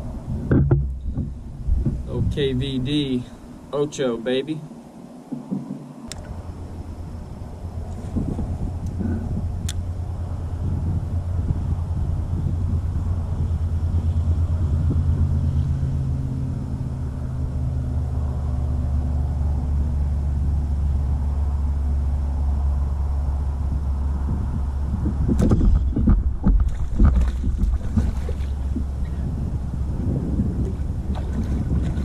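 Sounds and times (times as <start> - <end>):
low mechanical hum: 0.0 - 32.0
knocks and clatter on hull: 0.3 - 2.6, 25.1 - 29.6, 30.5 - 32.0.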